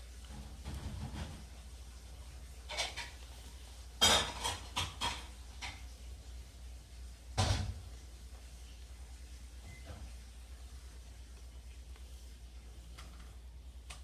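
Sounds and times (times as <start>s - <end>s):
hard objects knocking and clattering: 4.0s - 5.8s.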